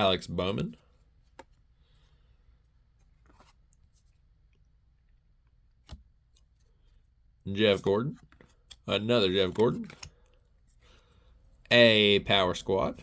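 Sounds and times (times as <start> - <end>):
cards shuffling with soft clicks: 0.6 - 7.3, 8.1 - 11.7.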